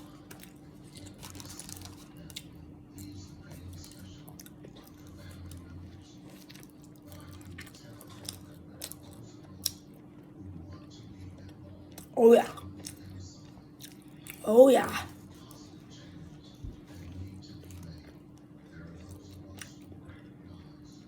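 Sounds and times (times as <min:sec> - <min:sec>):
person chewing wet mouth sounds: 0:00.0 - 0:10.0, 0:10.8 - 0:14.4, 0:16.2 - 0:21.0
faint steady hum: 0:00.0 - 0:21.0.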